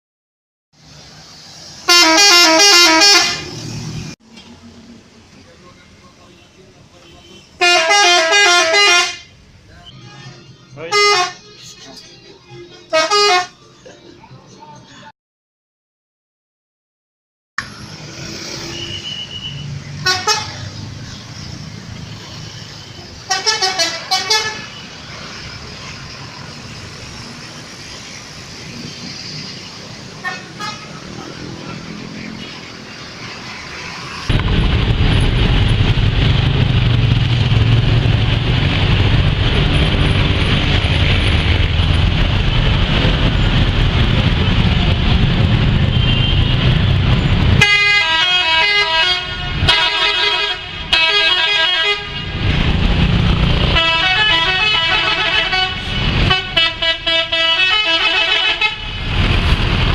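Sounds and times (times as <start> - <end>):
engine and road rumble: 0.7 - 15.1, 17.6 - 59.9
roadside traffic: 0.7 - 15.1, 17.6 - 59.9
musical bus horn: 1.8 - 3.7, 7.1 - 12.0, 12.7 - 13.7, 18.8 - 20.6, 23.2 - 24.8, 30.2 - 31.0, 47.6 - 52.4, 53.7 - 59.0.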